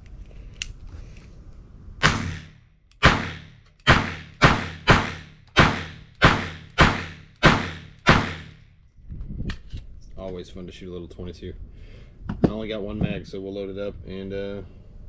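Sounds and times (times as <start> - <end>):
pistol shots: 2.0 - 8.6.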